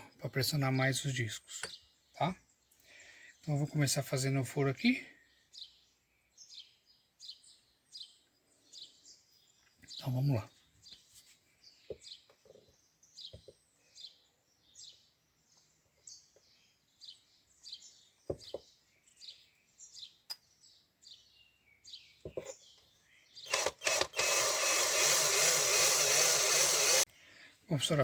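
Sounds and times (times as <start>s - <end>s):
birds chirping: 0.0s - 28.0s
sharp clicks: 23.5s - 27.0s
electric drill drilling: 23.5s - 27.1s.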